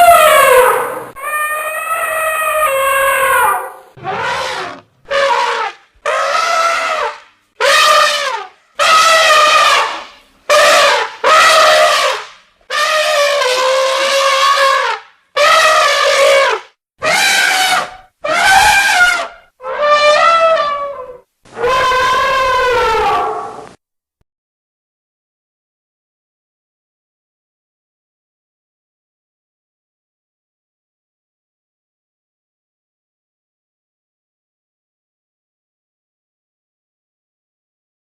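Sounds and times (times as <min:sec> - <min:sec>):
elephant trumpeting: 0:00.0 - 0:23.8.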